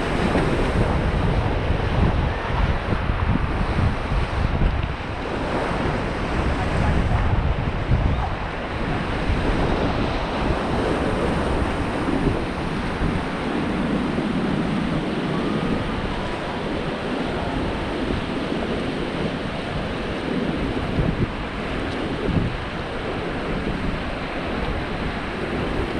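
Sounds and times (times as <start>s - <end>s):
river water rushing: 0.0s - 25.9s
wind buffeting microphone: 0.0s - 25.9s.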